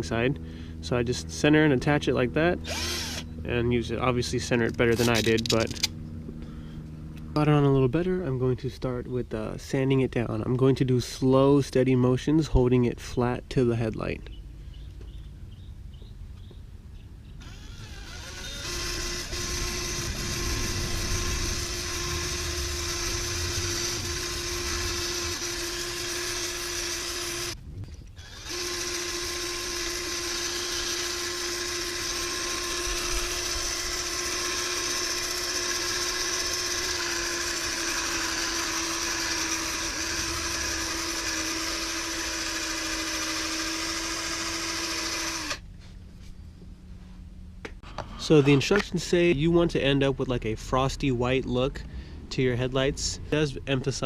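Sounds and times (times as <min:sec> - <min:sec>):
drill sanding plastic whine: 0:02.6 - 0:03.6, 0:17.4 - 0:45.7.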